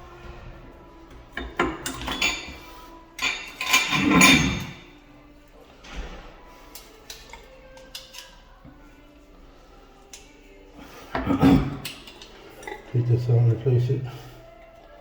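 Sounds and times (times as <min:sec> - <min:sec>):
metal parts ringing clinks: 0:01.4 - 0:02.6, 0:03.2 - 0:04.9.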